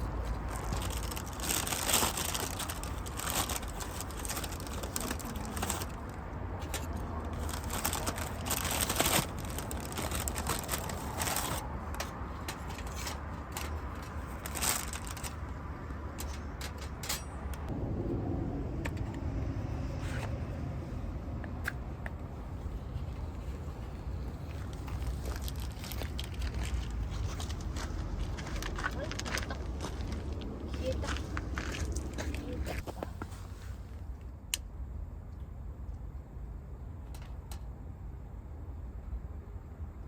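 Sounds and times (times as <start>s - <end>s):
plastic crinkling: 0.0s - 15.5s, 24.2s - 30.3s.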